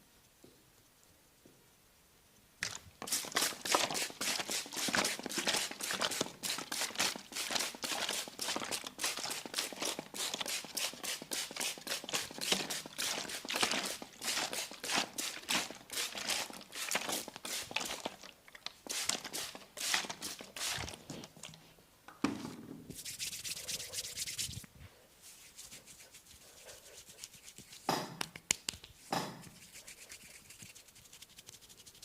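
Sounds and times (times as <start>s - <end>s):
hands crackling over hair: 23.0s - 32.0s.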